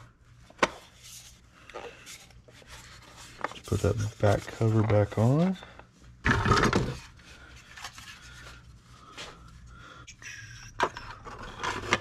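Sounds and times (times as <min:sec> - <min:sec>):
plastic parts rubbing and scraping: 0:00.9 - 0:05.6, 0:10.8 - 0:12.0.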